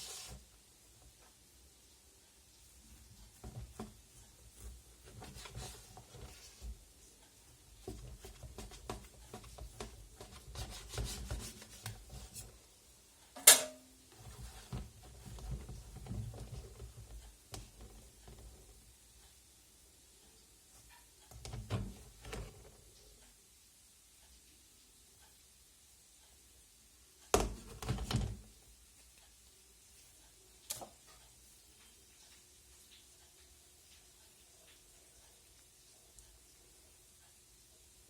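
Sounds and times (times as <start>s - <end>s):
sharp clink: 13.4s - 13.9s.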